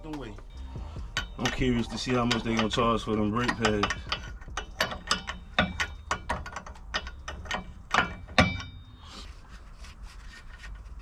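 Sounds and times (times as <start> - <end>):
ratchet wrench clicking: 1.0 - 8.8.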